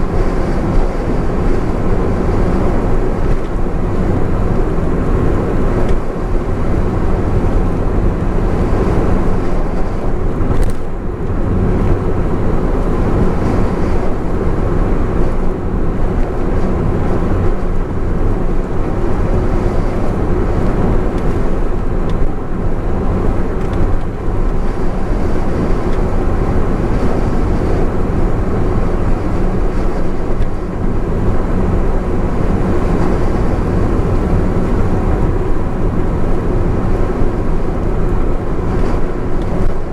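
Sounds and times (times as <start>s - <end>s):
car engine at speed: 0.0s - 39.9s
tyre and wind noise: 0.0s - 39.9s.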